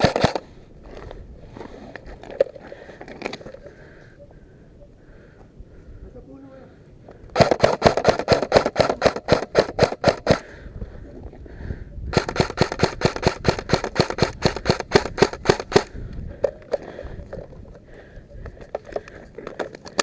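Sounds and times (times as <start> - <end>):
airsoft rifle firing bursts: 0.0 - 0.5, 7.4 - 10.5, 12.1 - 16.0.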